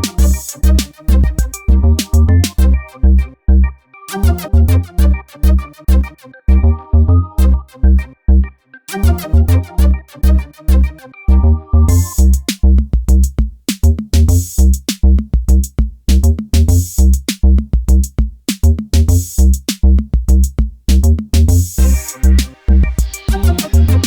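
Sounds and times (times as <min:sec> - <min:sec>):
electronic music with drum beat: 0:00.0 - 0:03.4, 0:04.1 - 0:06.6, 0:07.4 - 0:08.1, 0:08.9 - 0:24.0.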